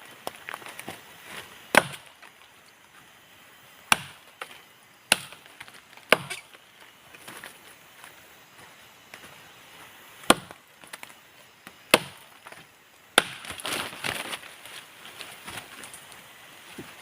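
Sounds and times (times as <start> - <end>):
blade chopping into vine: 1.7 - 2.1, 3.9 - 4.5, 5.1 - 5.5, 6.1 - 6.5, 11.9 - 12.2, 13.2 - 14.2.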